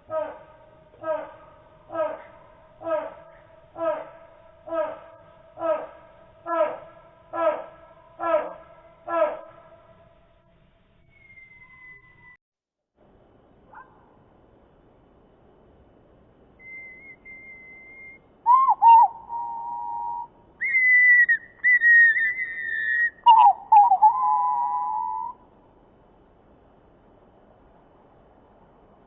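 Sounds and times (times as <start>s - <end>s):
slowed bird call whistles: 11.0s - 12.4s, 16.6s - 25.4s.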